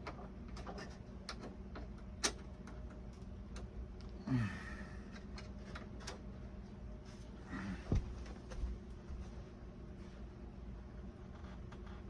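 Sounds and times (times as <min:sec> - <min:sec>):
low vocal grunt: 0:04.2 - 0:05.0.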